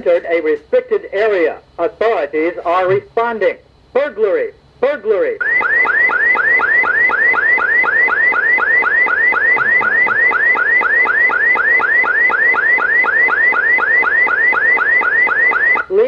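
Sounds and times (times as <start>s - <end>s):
recorded voice announcements: 0.0s - 5.5s, 9.4s - 10.4s, 15.8s - 16.0s
fast electronic siren sweep: 5.4s - 15.9s.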